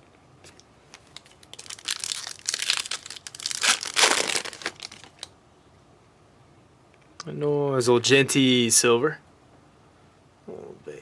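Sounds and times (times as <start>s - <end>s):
wrapper tearing and crinkling: 0.9s - 5.3s.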